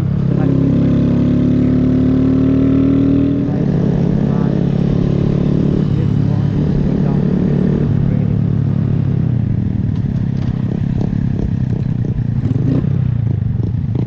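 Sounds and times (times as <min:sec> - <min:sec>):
small motorcycle engine running: 0:00.0 - 0:14.0
light clatter: 0:09.9 - 0:12.2.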